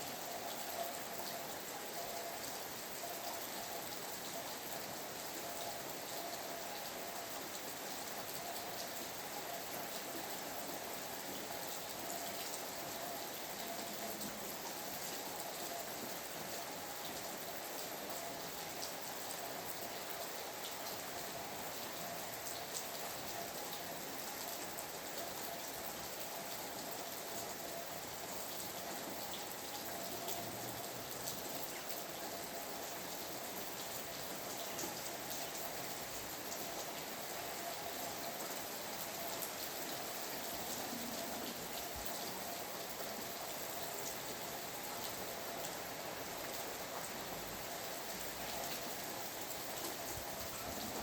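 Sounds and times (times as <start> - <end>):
steady rain with drop hits: 0.0 - 51.0.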